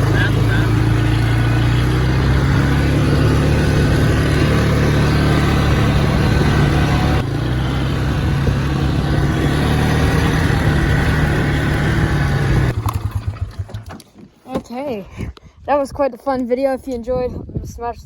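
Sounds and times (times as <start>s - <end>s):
atv engine running: 0.0s - 14.0s.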